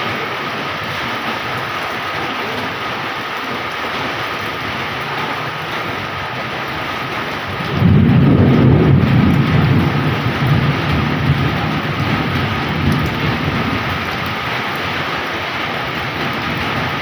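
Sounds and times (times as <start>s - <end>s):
heavy rain pouring: 0.0s - 17.0s
low thunder rolling: 4.5s - 17.0s.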